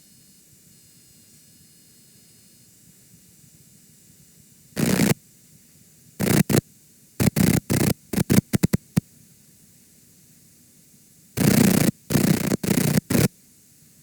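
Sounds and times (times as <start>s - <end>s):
faint tape hiss: 3.2s - 14.0s
harsh static bursts: 4.8s - 5.2s, 6.2s - 6.6s, 7.2s - 9.0s, 11.4s - 13.3s.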